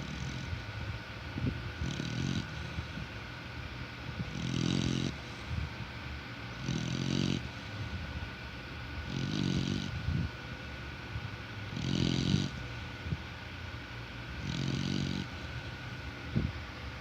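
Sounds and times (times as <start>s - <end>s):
dog snoring: 0.0s - 0.6s, 1.4s - 3.1s, 4.2s - 5.6s, 6.6s - 8.0s, 9.0s - 10.3s, 11.7s - 12.7s, 14.4s - 15.6s.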